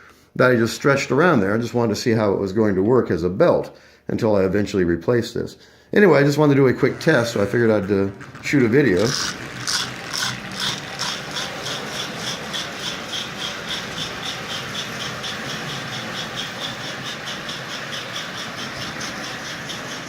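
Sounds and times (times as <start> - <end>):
toy locomotive running: 6.0 - 20.0
toy train tender chuffing: 6.1 - 20.0.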